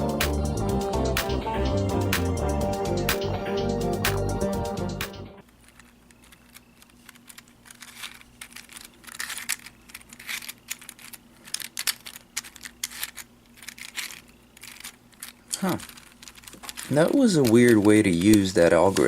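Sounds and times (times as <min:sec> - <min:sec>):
plastic puzzle clicking and clacking: 0:05.4 - 0:19.0.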